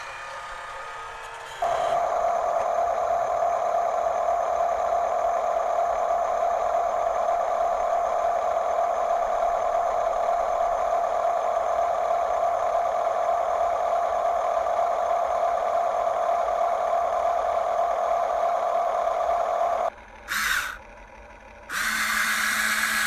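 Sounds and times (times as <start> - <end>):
toy electric motor whine: 0.0 - 20.9, 21.7 - 23.0.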